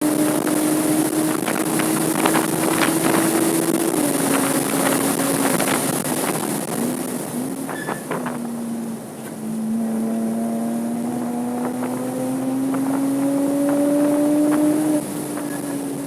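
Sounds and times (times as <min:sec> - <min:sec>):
car engine at high revs: 0:00.0 - 0:16.0
wind rushing: 0:00.0 - 0:16.0.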